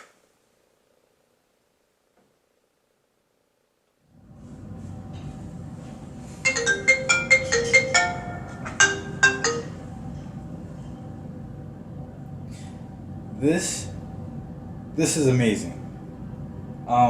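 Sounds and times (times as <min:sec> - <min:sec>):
steady low hum: 0:00.4 - 0:17.0
electronic marimba ringtone jingle: 0:06.5 - 0:09.9.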